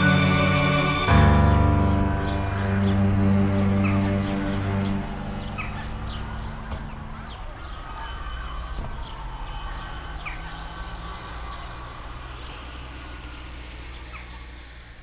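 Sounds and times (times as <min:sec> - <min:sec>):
held low music notes: 0:00.0 - 0:07.8
birds chirping: 0:00.0 - 0:15.0.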